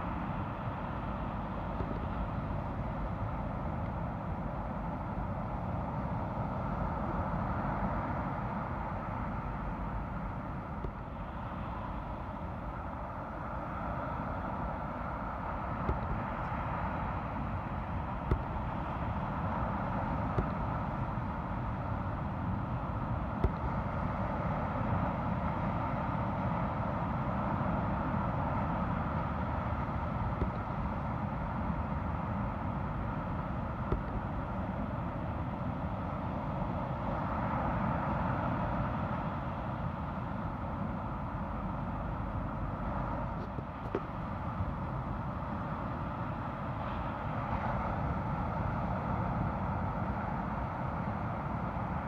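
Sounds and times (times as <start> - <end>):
ocean surf: 5.6 - 41.2.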